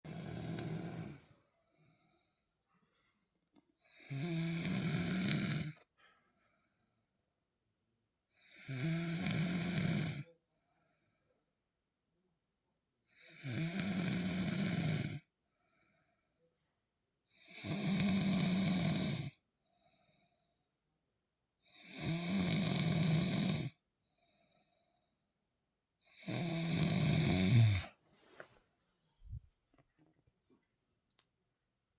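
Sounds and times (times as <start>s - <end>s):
woman snoring: 0.1s - 1.3s, 3.9s - 5.8s, 8.4s - 10.3s, 13.1s - 15.2s, 17.4s - 19.4s, 21.7s - 23.8s, 26.1s - 28.0s.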